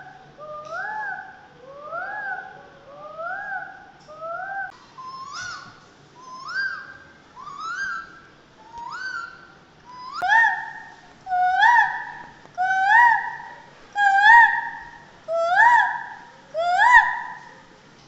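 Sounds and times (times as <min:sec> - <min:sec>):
animal calling: 0:00.0 - 0:17.6.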